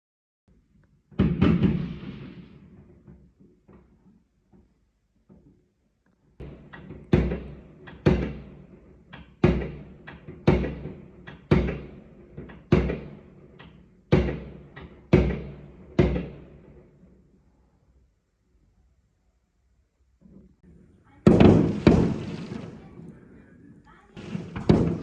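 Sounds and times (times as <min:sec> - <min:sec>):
fireworks rumble: 0:00.6 - 0:18.0, 0:20.2 - 0:25.0
fireworks bangs: 0:01.1 - 0:04.2, 0:06.4 - 0:17.1, 0:20.7 - 0:25.0.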